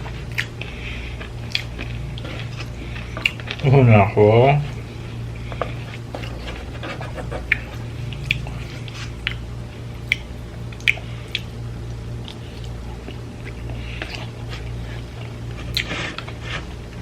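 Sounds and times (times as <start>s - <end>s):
person chewing food: 0.0s - 3.7s, 4.6s - 17.0s
steady low hum: 0.0s - 17.0s
wet mouth smacks and clicks: 9.2s - 9.4s, 10.0s - 11.5s.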